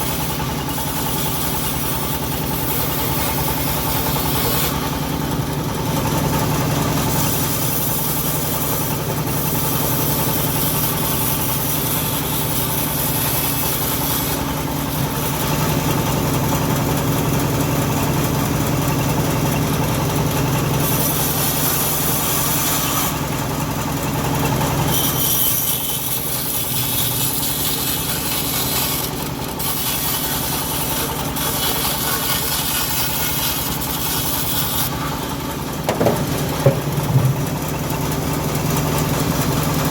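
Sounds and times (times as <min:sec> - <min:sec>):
saw cutting wood hiss: 0:00.0 - 0:05.0, 0:07.1 - 0:15.6, 0:20.8 - 0:23.3, 0:24.4 - 0:35.6
sawmill engine running: 0:00.0 - 0:39.9.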